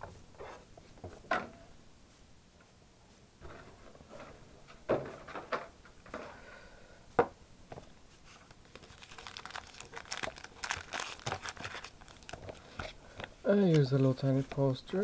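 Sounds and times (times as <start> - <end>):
packaging rustling and crinkling: 8.3 - 15.0.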